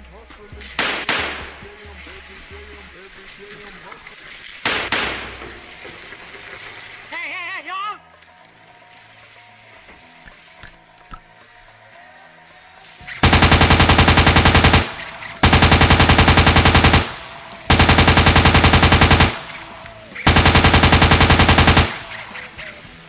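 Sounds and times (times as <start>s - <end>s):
machine-gun bursts: 4.7s - 5.4s, 13.2s - 22.8s.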